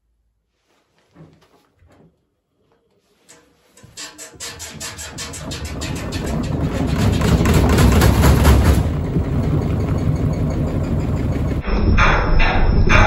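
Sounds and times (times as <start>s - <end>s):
washing machine drum spinning: 3.3s - 11.6s
fast regular drum knocking: 5.0s - 10.1s.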